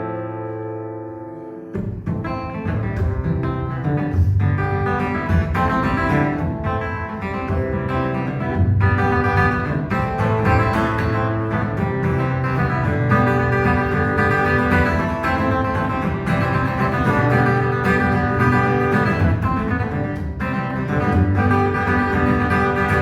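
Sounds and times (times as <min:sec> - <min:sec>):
acoustic guitar playing: 0:00.0 - 0:23.0.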